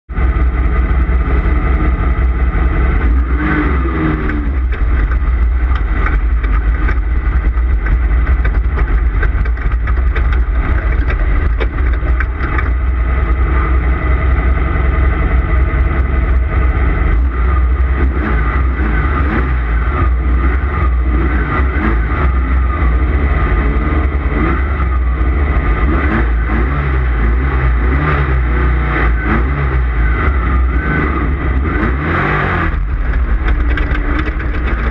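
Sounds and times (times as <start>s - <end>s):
race car engine revving: 0.1s - 34.9s
knocks and rattles: 4.0s - 13.5s, 32.6s - 34.9s.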